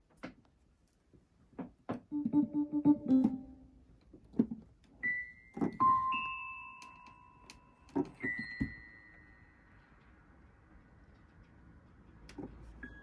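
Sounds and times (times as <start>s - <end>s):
keyboard notes: 2.1s - 3.9s.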